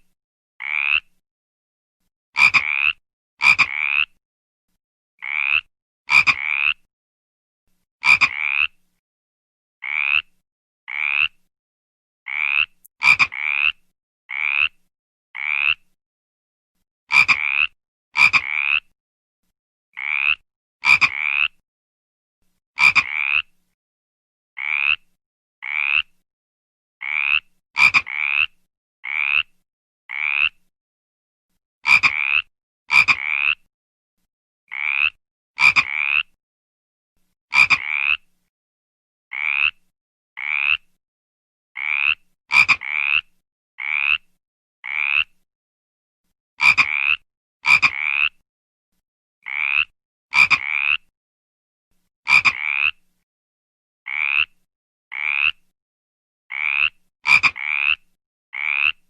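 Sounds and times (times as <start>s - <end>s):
frog croaking: 0.6s - 1.1s, 2.4s - 4.2s, 5.2s - 6.9s, 8.0s - 8.8s, 9.8s - 10.3s, 10.9s - 11.4s, 12.3s - 14.8s, 15.4s - 15.8s, 17.1s - 18.9s, 20.0s - 21.6s, 22.8s - 23.5s, 24.6s - 26.1s, 27.0s - 29.5s, 30.1s - 30.6s, 31.9s - 33.6s, 34.7s - 36.4s, 37.5s - 38.2s, 39.3s - 39.8s, 40.4s - 40.9s, 41.8s - 44.2s, 44.8s - 45.3s, 46.6s - 48.4s, 49.4s - 51.0s, 52.3s - 53.0s, 54.1s - 54.5s, 55.1s - 55.6s, 56.5s - 58.0s, 58.6s - 59.0s.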